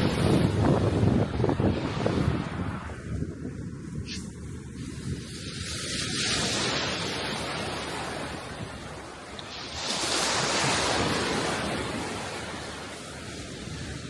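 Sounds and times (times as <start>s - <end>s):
sea waves breaking: 0.0s - 14.0s.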